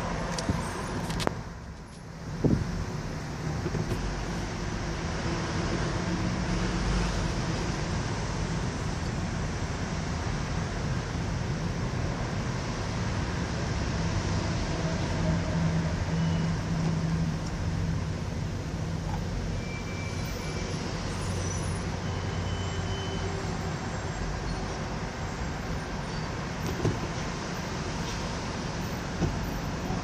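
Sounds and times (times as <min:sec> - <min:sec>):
vehicles rumbling: 0:00.0 - 0:30.0.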